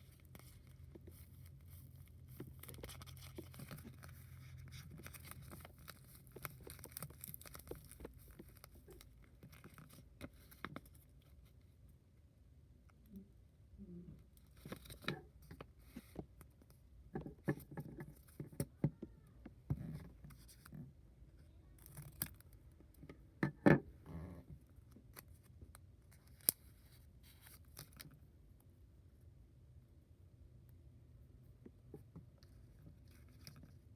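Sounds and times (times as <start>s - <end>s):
packaging rustling and tearing: 0.1s - 10.6s.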